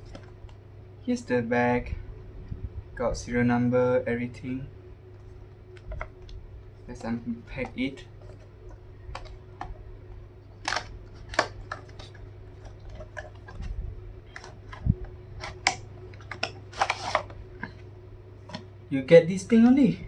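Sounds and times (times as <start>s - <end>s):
steady low hum: 0.0s - 20.0s
packaging rustling: 5.2s - 9.8s, 10.5s - 17.4s
packaging clicks and taps: 7.0s - 9.8s, 10.6s - 13.7s, 14.3s - 17.4s.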